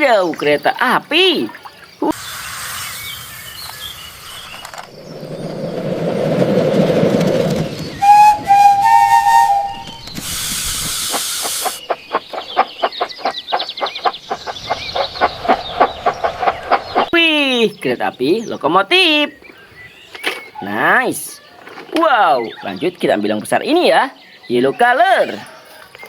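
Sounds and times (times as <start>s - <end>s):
steam hiss: 2.1s - 4.5s, 9.3s - 11.8s
steam train rumble: 5.0s - 11.8s
two-tone train whistle: 8.0s - 11.7s.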